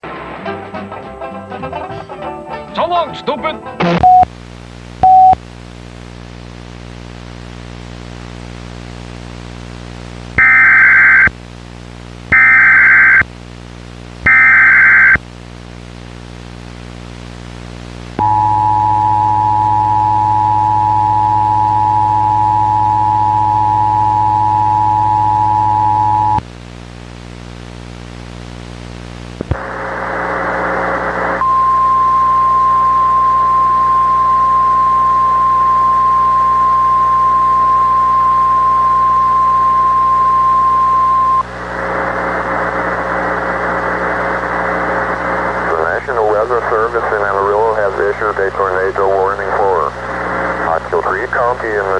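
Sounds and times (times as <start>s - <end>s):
burst of static: 3.8s - 51.9s
low buzzing hum: 4.0s - 46.0s
two-tone attention signal: 5.0s - 5.4s, 10.4s - 11.3s, 12.3s - 13.2s, 14.3s - 15.2s, 18.2s - 26.4s, 31.4s - 41.4s
warbling data bursts: 10.4s - 11.3s, 12.3s - 13.2s, 14.3s - 15.2s.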